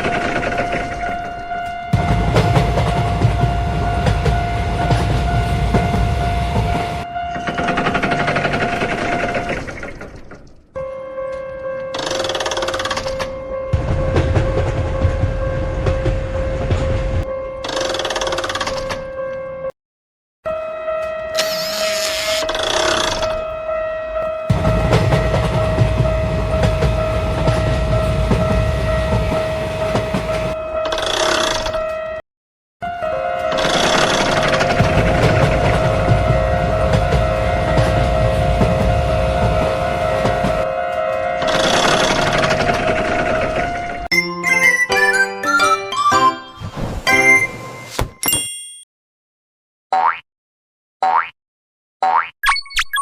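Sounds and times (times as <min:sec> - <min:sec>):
train rumbling past: 0:00.0 - 0:09.8, 0:24.5 - 0:30.8, 0:33.2 - 0:44.1
rail clatter: 0:24.5 - 0:31.6, 0:33.4 - 0:44.1.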